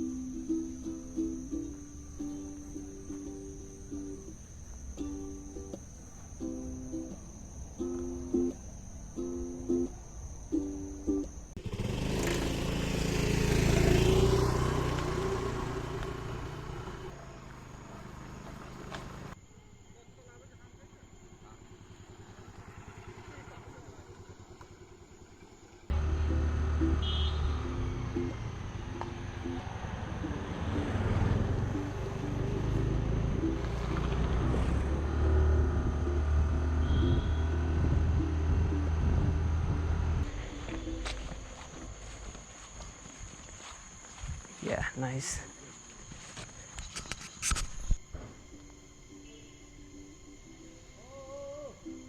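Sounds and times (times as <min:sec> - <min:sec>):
vehicle engine passing by: 0:00.0 - 0:19.4, 0:21.6 - 0:44.6
background music: 0:25.9 - 0:42.1
steady low rumble: 0:35.8 - 0:43.3.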